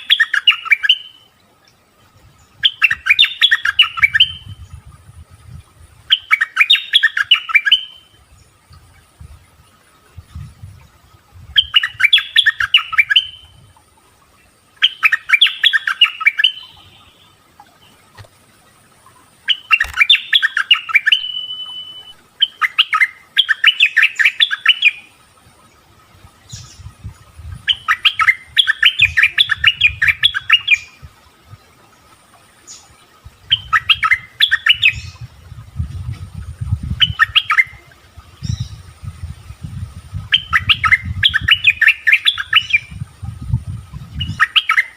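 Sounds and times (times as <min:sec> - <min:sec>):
bird chirping: 0:00.0 - 0:01.3, 0:02.4 - 0:04.7, 0:06.1 - 0:08.5, 0:14.8 - 0:18.0, 0:19.4 - 0:25.1, 0:27.7 - 0:31.0, 0:33.5 - 0:35.3.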